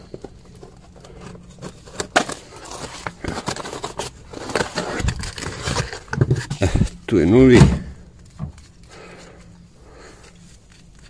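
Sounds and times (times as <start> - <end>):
car parts clicking and scraping: 0.0 - 7.0
steady low hum: 0.0 - 11.0.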